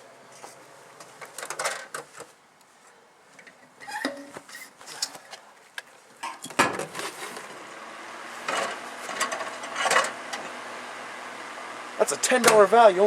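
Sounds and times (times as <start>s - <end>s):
clattering of objects handled: 0.4s - 2.4s.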